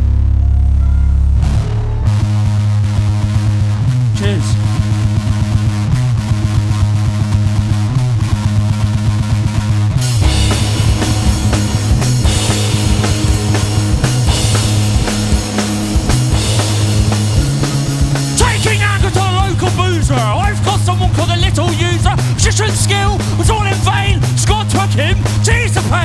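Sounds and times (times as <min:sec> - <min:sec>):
guitar and bass riff: 0:00.0 - 0:26.0
drum kit and cymbals: 0:10.0 - 0:26.0.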